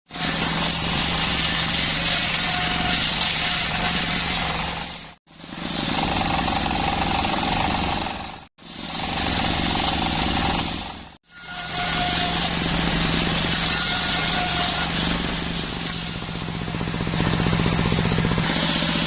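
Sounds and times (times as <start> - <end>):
circular saw cutting wood: 0.1 - 19.0.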